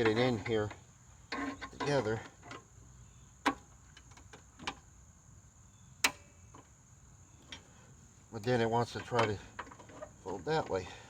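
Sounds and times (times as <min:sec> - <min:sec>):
sharp metal clicks and knocks: 0:08.9 - 0:10.7.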